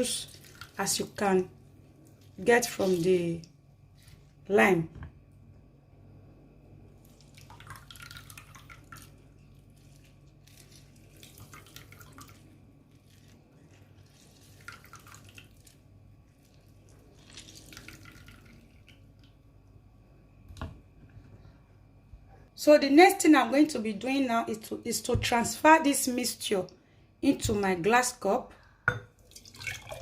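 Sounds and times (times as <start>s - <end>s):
juice dripping into liquid: 0.0s - 4.4s, 6.8s - 20.7s, 29.1s - 30.0s.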